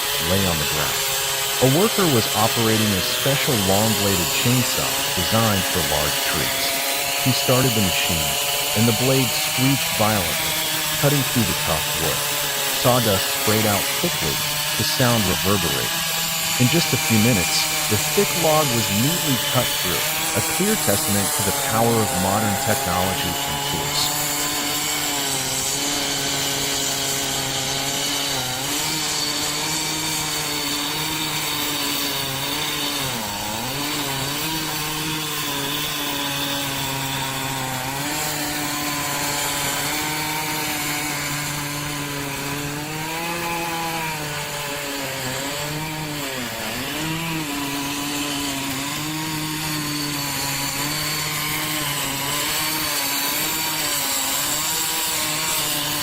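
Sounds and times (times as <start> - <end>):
chainsaw cutting log: 0.0 - 56.0.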